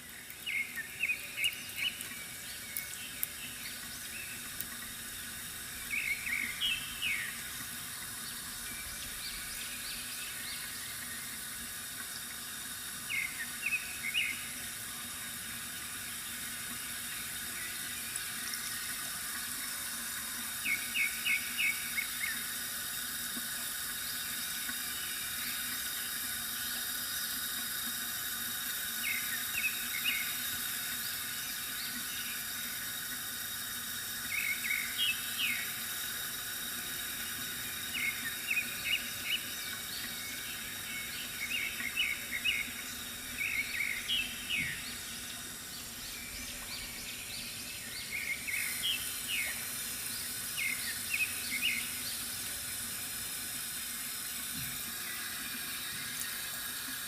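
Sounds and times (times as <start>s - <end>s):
water trickling from fountain: 0.0s - 57.0s
birds chirping: 5.8s - 7.4s, 37.9s - 52.5s.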